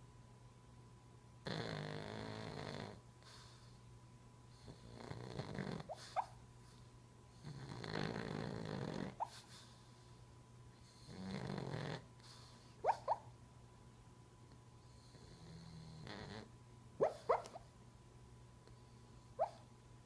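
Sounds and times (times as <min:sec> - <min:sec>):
dog snoring: 0:01.4 - 0:03.8, 0:04.5 - 0:10.2, 0:10.8 - 0:13.2, 0:14.9 - 0:17.6.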